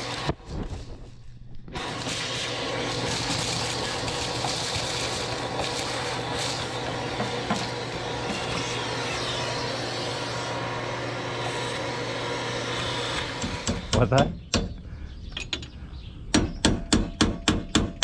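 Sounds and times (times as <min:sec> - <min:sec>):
machine humming and hissing: 0:01.7 - 0:14.0.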